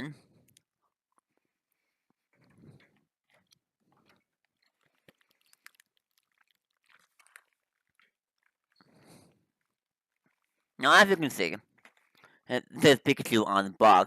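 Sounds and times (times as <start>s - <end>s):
faint chewing: 0.2s - 10.8s, 11.6s - 12.5s.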